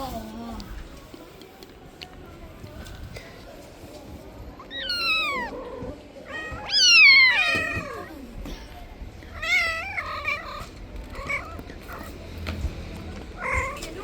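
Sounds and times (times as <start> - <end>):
cat meowing: 4.6 - 8.1, 9.3 - 12.1.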